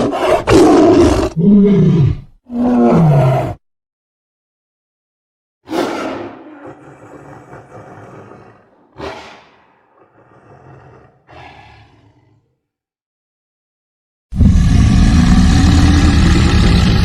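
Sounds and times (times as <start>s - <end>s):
low rumbling undertone: 14.4s - 17.0s.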